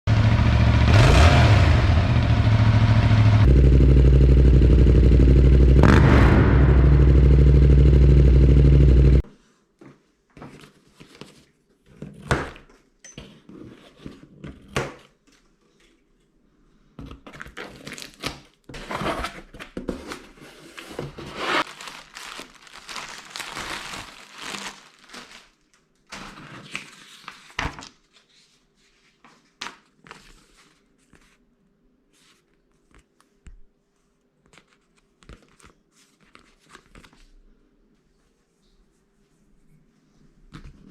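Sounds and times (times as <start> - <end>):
motorcycle engine revving: 0.1 - 9.2
packaging crinkling: 21.5 - 25.8.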